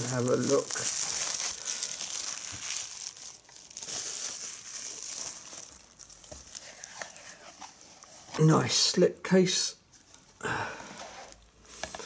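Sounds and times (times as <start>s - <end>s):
plastic wrapping crinkling and tearing: 0.0s - 8.0s.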